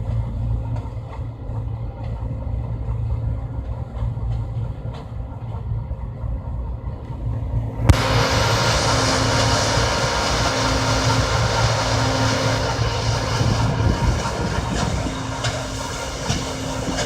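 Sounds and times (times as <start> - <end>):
combine harvester engine hum: 0.0 - 17.0
threshing machinery rushing: 7.9 - 17.0.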